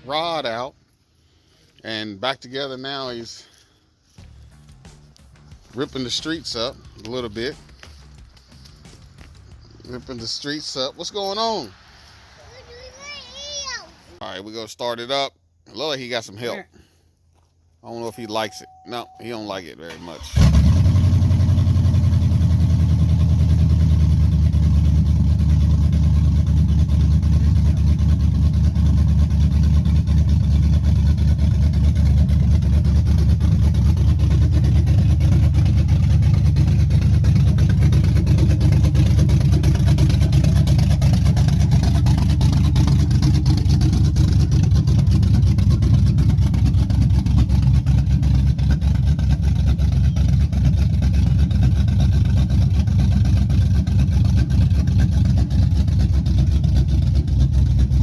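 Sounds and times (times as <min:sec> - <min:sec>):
loud choppy engine idling: 0:04.2 - 0:11.6, 0:19.2 - 0:58.0.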